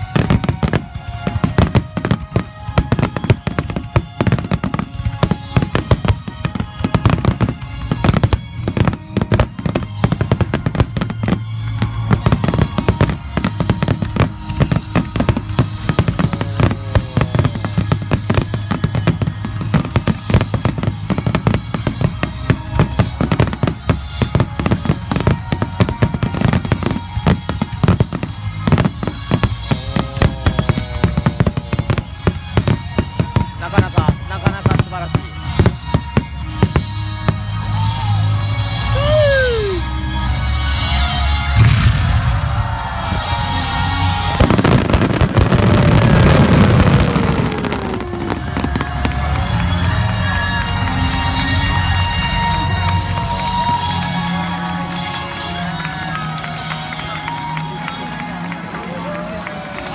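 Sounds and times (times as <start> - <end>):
fireworks bursting and crackling: 0.0 - 59.9
music over loudspeakers: 0.0 - 59.9.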